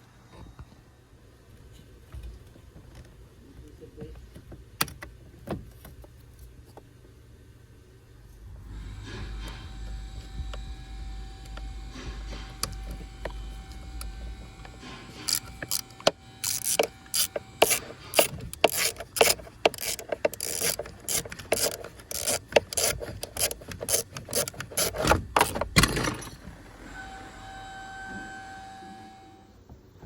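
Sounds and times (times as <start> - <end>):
chisel scraping metal: 12.0 - 25.6
hammer tapping a chisel: 15.3 - 24.9.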